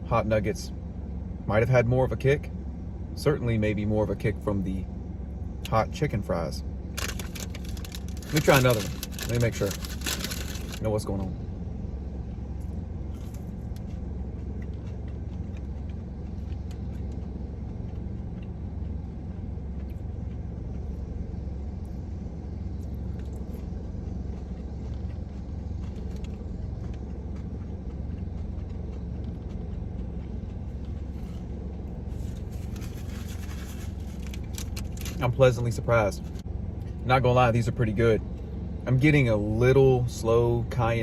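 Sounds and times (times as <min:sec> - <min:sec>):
steady low rumble: 0:00.0 - 0:41.0.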